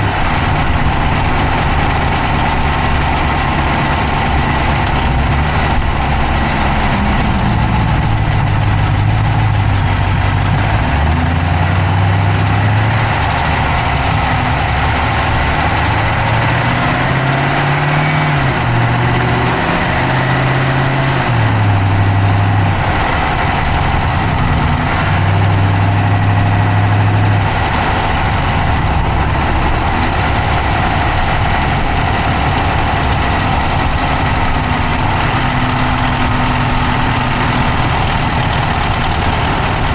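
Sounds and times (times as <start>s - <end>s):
car engine idling: 0.0s - 39.9s
fast steady clicking: 22.4s - 39.9s.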